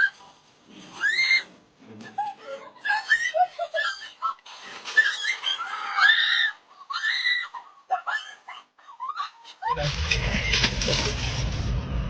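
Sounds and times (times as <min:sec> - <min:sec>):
people shrieking and squealing: 0:02.8 - 0:10.8.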